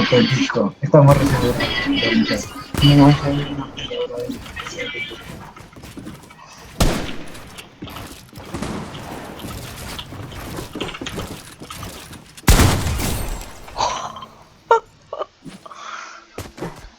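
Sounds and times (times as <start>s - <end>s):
rough crackling noise: 1.1s - 14.6s.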